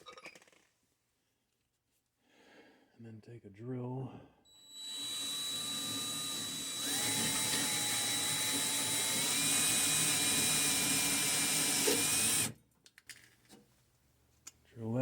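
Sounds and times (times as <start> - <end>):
electric drill drilling rivet: 4.6 - 12.6.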